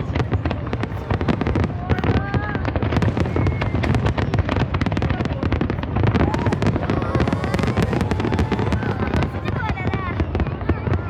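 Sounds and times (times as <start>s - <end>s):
fireworks bangs and crackles: 0.0s - 11.0s
deep rumble: 5.9s - 10.2s.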